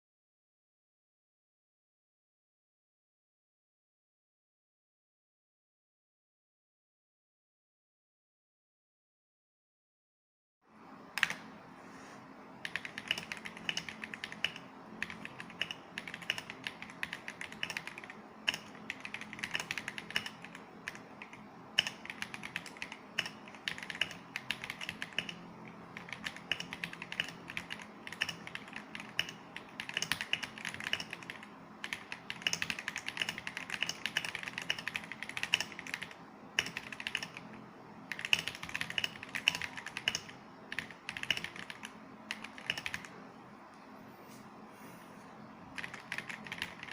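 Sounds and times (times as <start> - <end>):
mechanical keyboard typing: 11.2 - 11.5, 12.6 - 43.2, 45.7 - 46.9.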